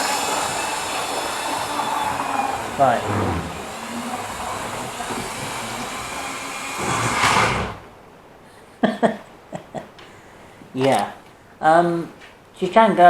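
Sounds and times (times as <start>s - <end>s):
model train motor whirring: 0.0s - 7.8s.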